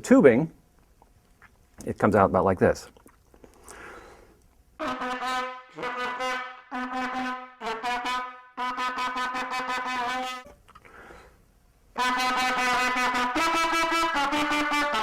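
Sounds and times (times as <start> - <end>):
brassy trumpet-like notes: 4.8 - 10.6, 12.0 - 15.0.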